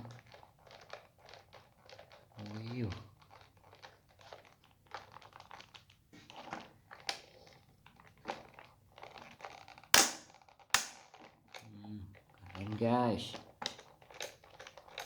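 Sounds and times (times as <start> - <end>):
packaging rustling and crinkling: 0.1 - 15.0
sharp loud plastic clacks: 9.9 - 11.1.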